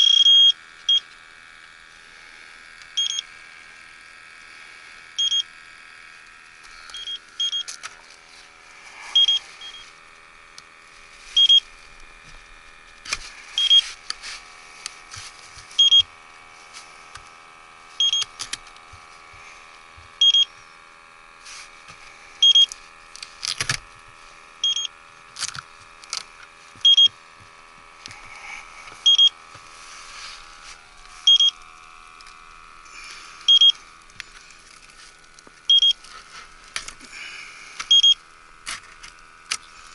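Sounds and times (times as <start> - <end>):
steady hum: 0.0 - 39.9.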